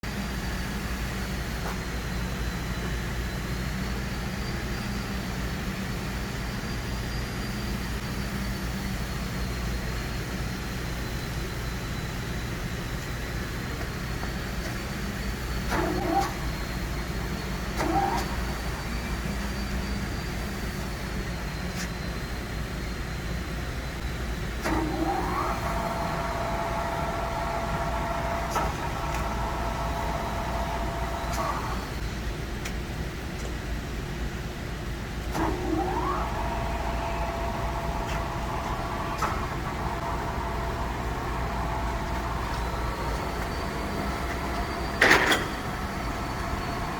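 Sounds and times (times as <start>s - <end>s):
lathe humming with high whine: 0.1s - 32.4s, 35.3s - 46.9s
gear whine: 23.9s - 32.2s, 35.3s - 46.9s
lathe humming: 25.5s - 32.0s, 35.4s - 46.9s.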